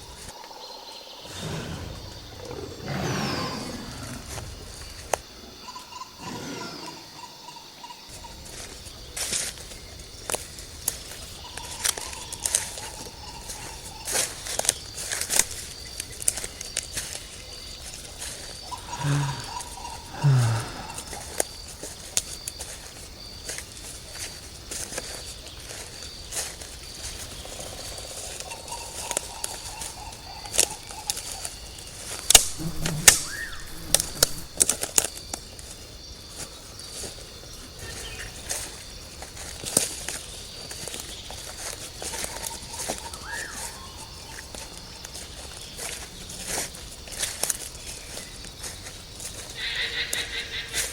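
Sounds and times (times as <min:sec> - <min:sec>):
thin high insect tone: 0:00.0 - 0:50.8
insects buzzing: 0:00.0 - 0:50.9
sharp snaps and crackles: 0:09.2 - 0:17.2, 0:30.5 - 0:35.7
sharp snaps and cracks: 0:30.5 - 0:35.4
rustling: 0:32.1 - 0:35.7.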